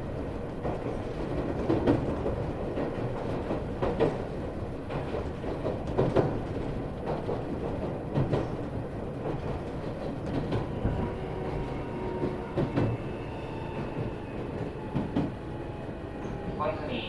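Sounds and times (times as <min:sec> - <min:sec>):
train wheels rumbling on rail: 0:00.0 - 0:17.0
clacks over rail joints: 0:00.5 - 0:13.1.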